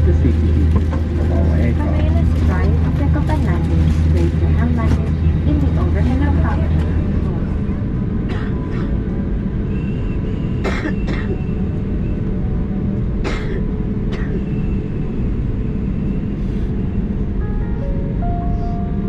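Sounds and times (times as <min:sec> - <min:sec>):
aircraft cabin rumble: 0:00.0 - 0:19.0
person coughing: 0:08.3 - 0:09.0, 0:10.6 - 0:11.4, 0:13.2 - 0:14.4.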